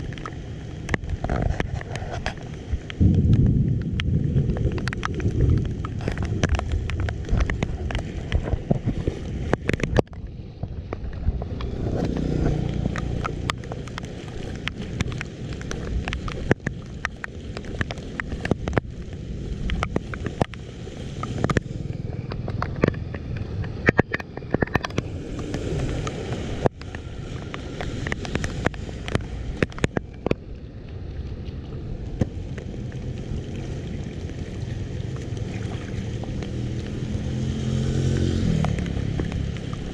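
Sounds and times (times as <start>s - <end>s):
sharp clicks and knocks: 21.2s - 30.5s
water rushing into drain: 31.8s - 39.9s.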